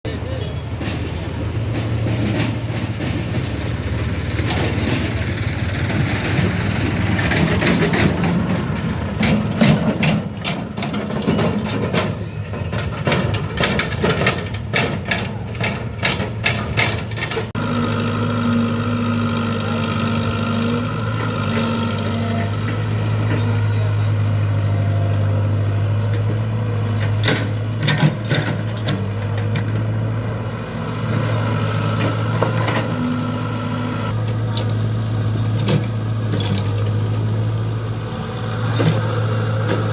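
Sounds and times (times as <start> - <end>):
heavy diesel machinery running: 0.0 - 39.9
metallic clanks and knocks: 0.7 - 17.6, 25.8 - 31.2, 31.8 - 33.2, 35.5 - 37.3.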